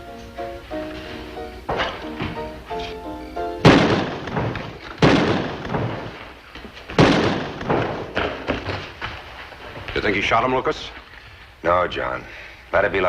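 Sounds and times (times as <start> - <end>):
soft background music: 0.0 - 3.8
gunshots: 3.6 - 8.8.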